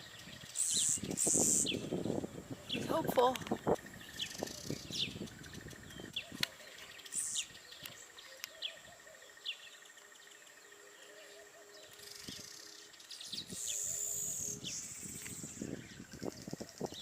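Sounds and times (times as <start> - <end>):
birds chirping: 0.0 - 17.0
high buzzy bird call: 0.0 - 17.0.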